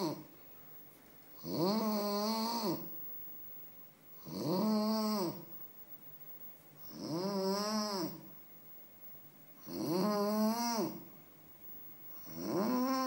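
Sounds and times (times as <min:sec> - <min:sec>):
pitched snoring: 0:00.0 - 0:00.3, 0:01.4 - 0:02.9, 0:04.2 - 0:05.5, 0:06.8 - 0:08.3, 0:09.6 - 0:11.1, 0:12.2 - 0:13.0.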